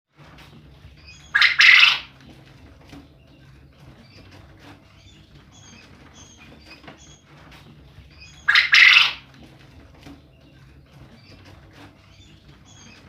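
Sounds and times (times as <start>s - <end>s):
faint high bird chirps: 0.9s - 2.2s, 3.2s - 7.3s, 8.0s - 9.3s, 10.1s - 13.0s
quail call: 1.3s - 2.1s, 8.4s - 9.2s.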